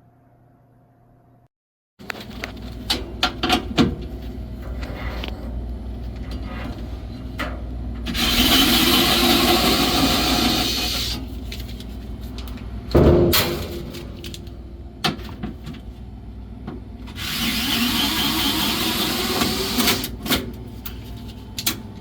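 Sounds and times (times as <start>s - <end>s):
electric screwdriver driving screw: 8.2s - 11.2s, 17.1s - 20.2s.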